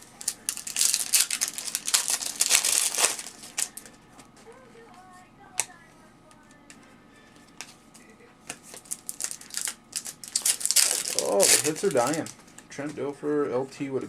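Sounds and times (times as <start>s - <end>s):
foil wrapper tearing and crinkling: 0.0s - 3.9s, 8.5s - 12.4s.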